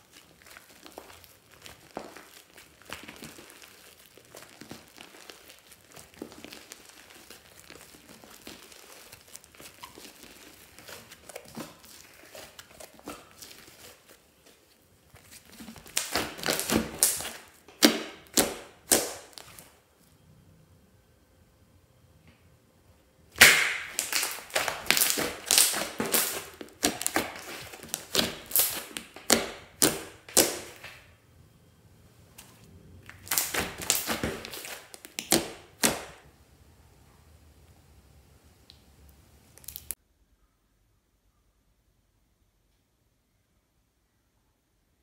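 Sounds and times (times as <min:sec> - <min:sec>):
slime crinkling and crackling: 0:00.0 - 0:19.8, 0:23.4 - 0:31.1, 0:32.3 - 0:36.2, 0:39.5 - 0:40.0
sticky pops and snaps: 0:23.4 - 0:31.0, 0:33.1 - 0:36.2.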